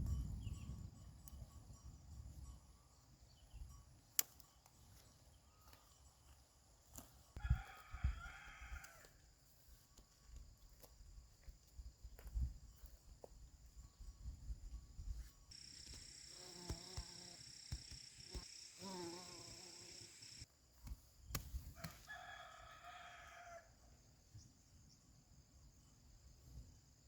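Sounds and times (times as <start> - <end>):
rooster crowing: 7.4 - 9.2, 21.8 - 23.8
insects buzzing: 15.5 - 20.5.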